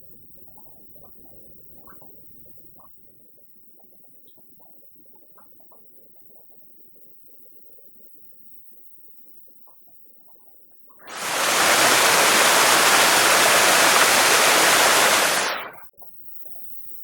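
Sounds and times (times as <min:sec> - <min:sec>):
waterfall roaring: 0:11.1 - 0:15.8.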